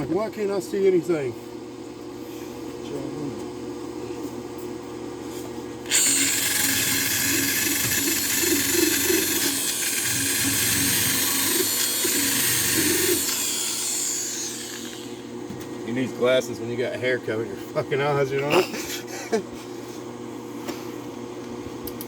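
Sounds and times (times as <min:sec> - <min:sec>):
arc welding hiss: 0:06.1 - 0:15.0.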